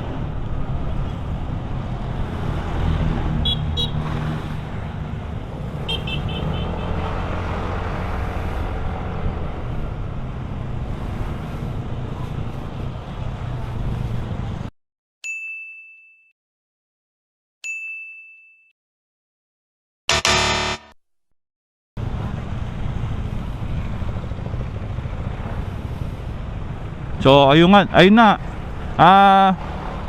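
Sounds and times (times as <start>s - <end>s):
motorbike road and engine noise: 0.0s - 14.7s, 22.0s - 30.0s.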